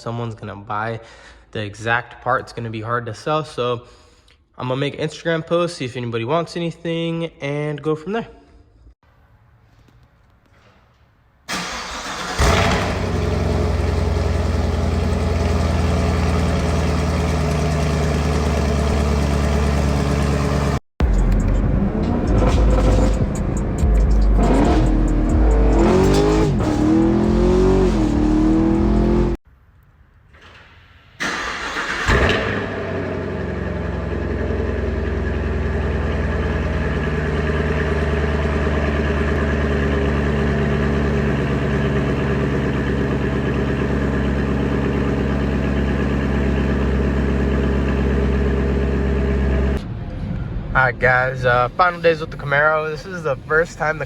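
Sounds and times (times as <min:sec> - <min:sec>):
car engine revving: 0:11.5 - 0:29.4, 0:31.3 - 0:49.8
engine droning steadily: 0:12.4 - 0:29.4, 0:32.1 - 0:54.0.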